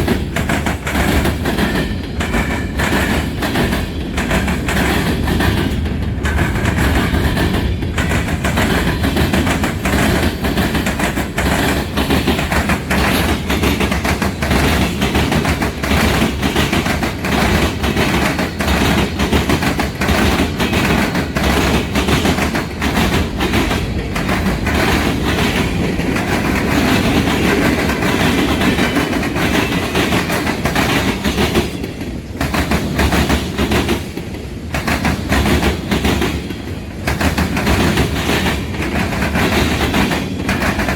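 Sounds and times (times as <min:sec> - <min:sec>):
low train rumble: 0:00.0 - 0:40.9
train wheels clacking over rail joints: 0:00.0 - 0:40.9.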